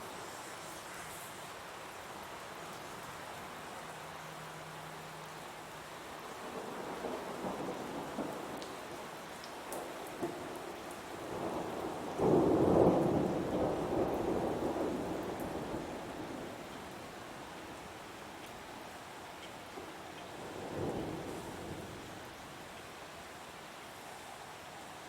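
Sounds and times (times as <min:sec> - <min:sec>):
heavy rain falling: 0:00.0 - 0:25.0
thunder rumbling: 0:06.4 - 0:09.1, 0:09.8 - 0:17.0.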